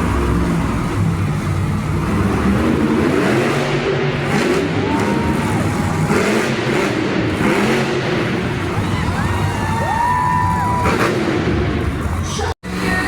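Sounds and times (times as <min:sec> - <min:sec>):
monster truck engines revving: 0:00.0 - 0:13.0
crowd noise: 0:03.9 - 0:13.0.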